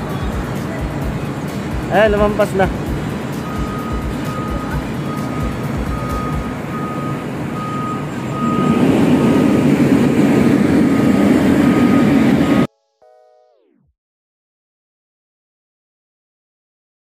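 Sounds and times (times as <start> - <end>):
heavy machine engine: 0.0 - 12.7
reversing alarm beeping: 3.4 - 12.7.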